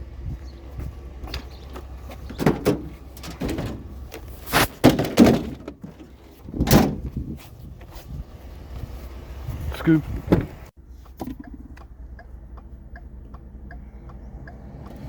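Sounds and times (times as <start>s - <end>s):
low steady rumble: 0.0s - 15.0s
objects thudding being set down: 2.1s - 7.1s.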